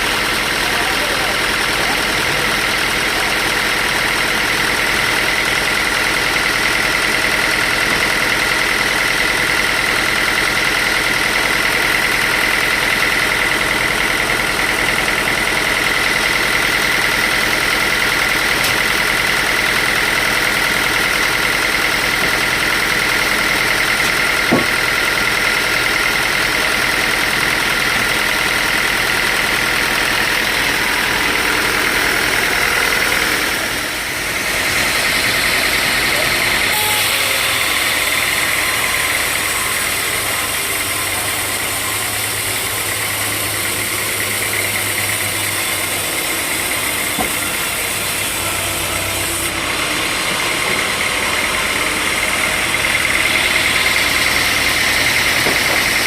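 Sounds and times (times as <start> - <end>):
sawmill machinery drone: 0.0 - 56.0
steady high whine: 29.9 - 56.0.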